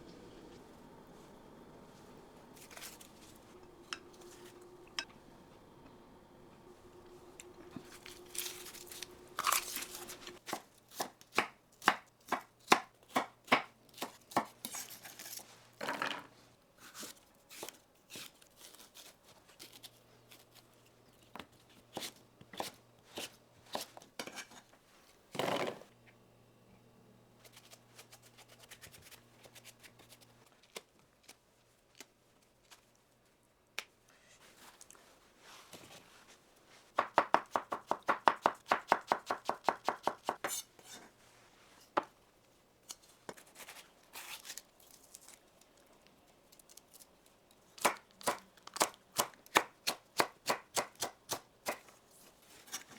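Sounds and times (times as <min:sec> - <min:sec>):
knife chopping on cutting board: 0:37.0 - 0:40.6.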